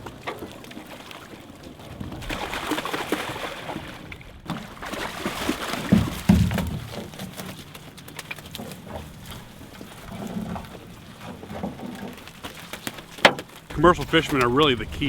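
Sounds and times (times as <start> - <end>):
water splashing around boat: 0.0 - 15.0
knocks on boat: 5.8 - 7.2, 13.2 - 15.0.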